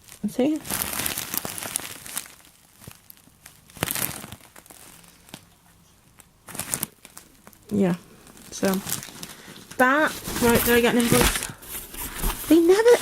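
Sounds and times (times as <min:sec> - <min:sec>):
packaging crinkling and rustling: 0:00.0 - 0:13.0.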